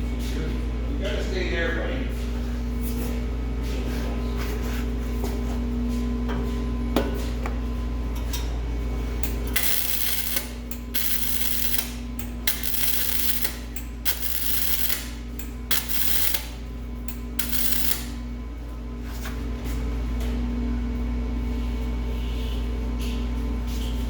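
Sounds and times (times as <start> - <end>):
steady hum: 0.0 - 18.6
welding arc crackling: 9.2 - 18.2.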